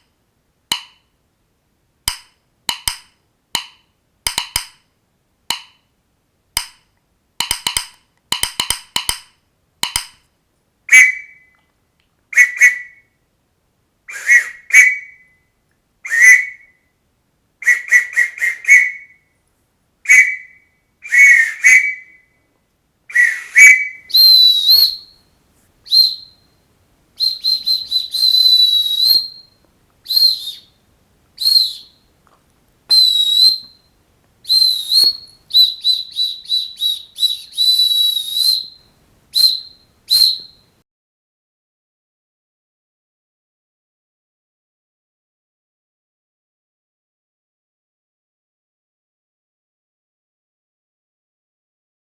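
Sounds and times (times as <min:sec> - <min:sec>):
high whistle notes: 0:14.1 - 0:15.5, 0:16.1 - 0:16.9, 0:20.1 - 0:22.4, 0:23.1 - 0:25.2, 0:25.9 - 0:26.5, 0:27.2 - 0:30.8, 0:31.4 - 0:32.0, 0:32.9 - 0:40.6
short squeaky chirps: 0:34.5 - 0:38.8.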